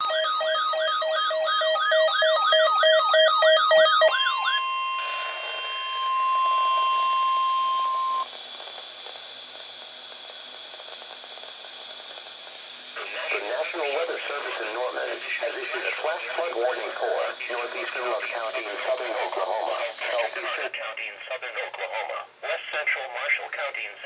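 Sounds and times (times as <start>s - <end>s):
electronic alarm warbling: 0.0s - 8.2s
steady warning tone: 0.0s - 8.3s, 13.0s - 20.6s
radio hiss: 4.9s - 24.0s.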